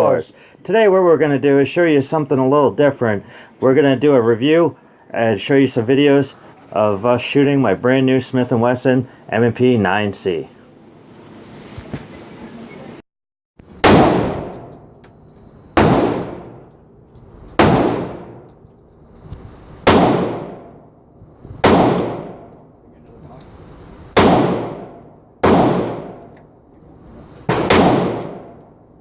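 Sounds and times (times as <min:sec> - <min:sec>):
pistol shots: 0:13.8 - 0:14.7, 0:15.8 - 0:16.6, 0:17.6 - 0:18.4, 0:19.8 - 0:20.7, 0:21.6 - 0:22.5, 0:24.2 - 0:26.2, 0:27.5 - 0:28.6.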